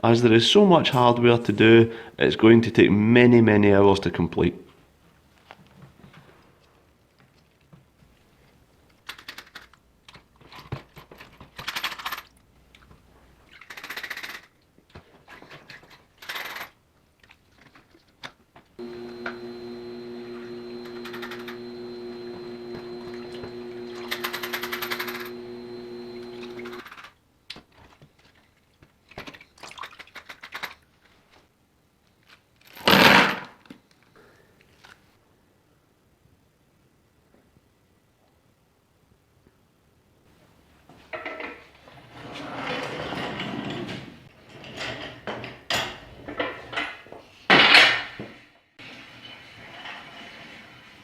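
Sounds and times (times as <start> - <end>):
small electric machine humming: 18.8 - 26.8.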